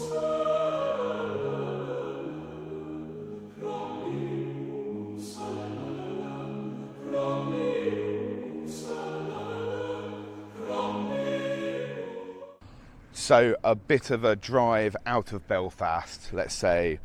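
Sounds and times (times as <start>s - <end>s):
slow choir-like chords: 0.0s - 12.6s.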